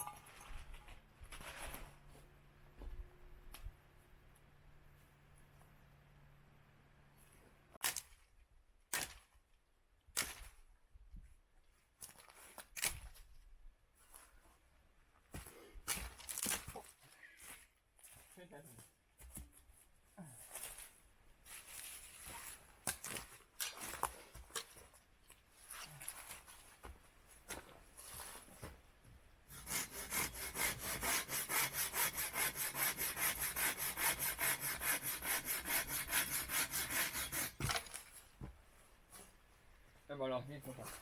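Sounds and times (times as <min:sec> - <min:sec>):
hand saw cutting wood: 0:29.5 - 0:38.0.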